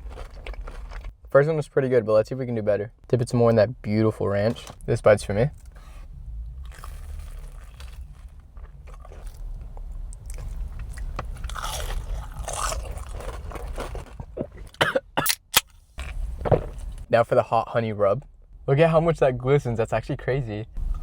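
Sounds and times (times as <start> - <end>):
close-up chewing: 0.0 - 1.2, 6.6 - 14.8
crunching bites: 0.0 - 1.2, 6.6 - 14.3.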